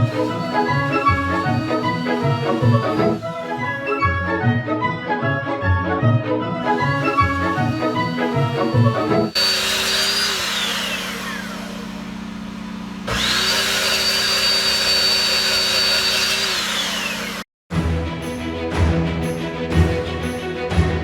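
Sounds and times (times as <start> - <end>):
power saw whining: 0.0 - 4.3, 6.6 - 17.5.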